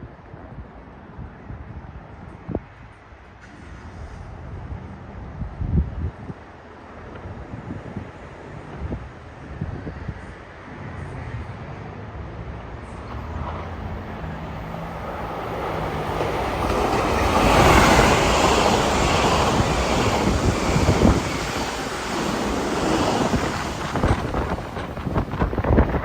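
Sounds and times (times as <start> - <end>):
train rushing past: 10.7 - 26.0.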